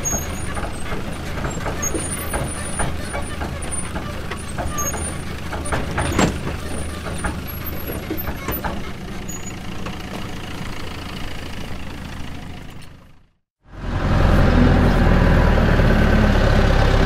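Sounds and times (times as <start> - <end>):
metallic clanks and knocks: 0.0 - 11.3
excavator engine running: 0.0 - 17.0.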